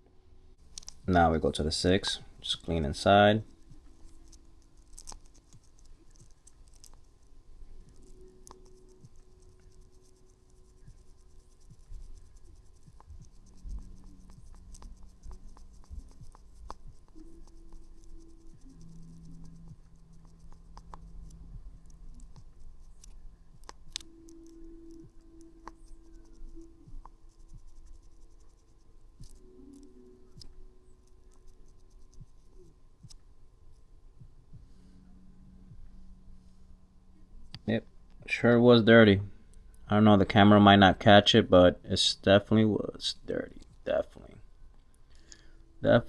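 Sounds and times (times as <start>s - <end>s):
cleaning tool scratching in port: 7.9s - 29.4s.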